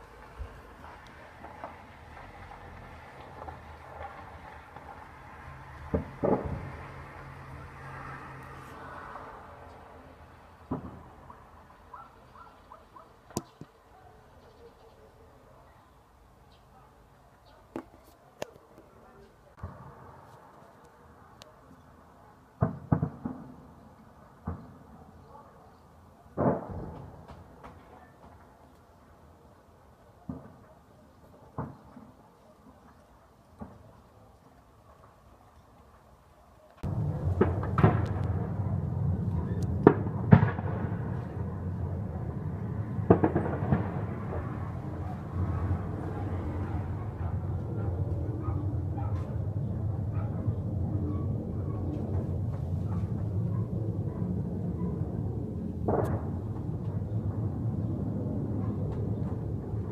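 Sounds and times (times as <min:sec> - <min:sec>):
explosions with echo: 0:00.2 - 0:07.2, 0:36.8 - 0:59.9
steady low rumble: 0:36.8 - 0:59.9
distant gunshots: 0:39.7 - 0:41.7, 0:42.8 - 0:47.0.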